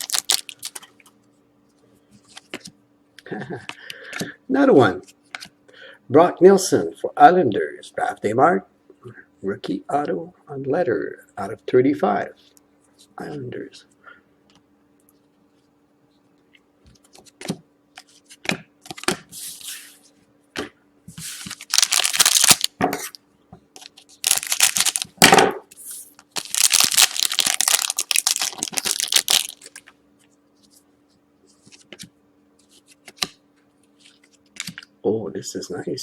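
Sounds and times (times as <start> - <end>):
card pack wrapper tearing and crinkling: 0.0 - 0.9, 21.2 - 22.8, 23.8 - 25.2, 26.3 - 29.9.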